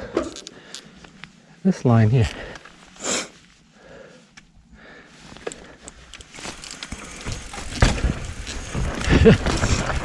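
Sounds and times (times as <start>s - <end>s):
bike tyres on dirt trail: 4.8s - 10.0s
bike clicks and knocks: 5.4s - 10.0s
heavy thump: 7.7s - 8.2s.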